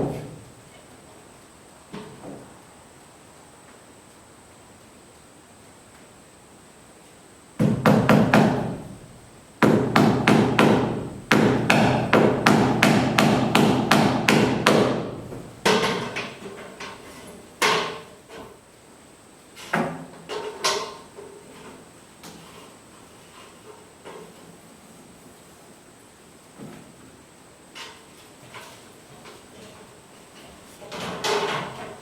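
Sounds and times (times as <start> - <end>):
hammer blows: 7.6 - 15.6.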